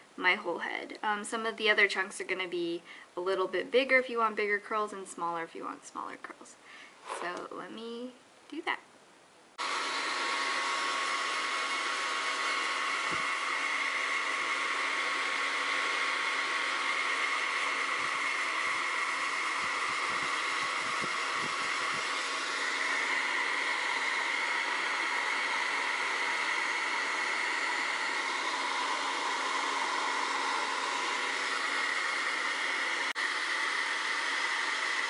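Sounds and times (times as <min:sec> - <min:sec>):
hair dryer running: 0:07.0 - 0:07.4, 0:09.6 - 0:35.0.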